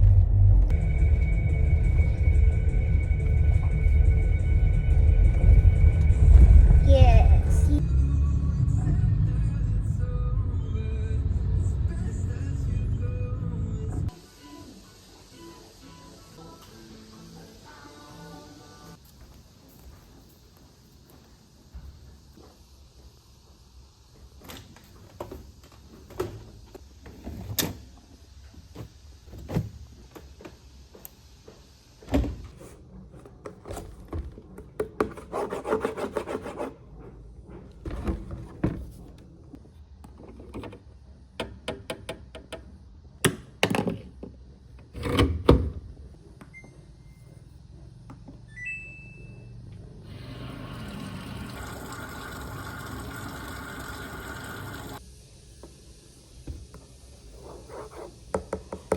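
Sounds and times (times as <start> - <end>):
steady hiss: 55.0 - 58.4.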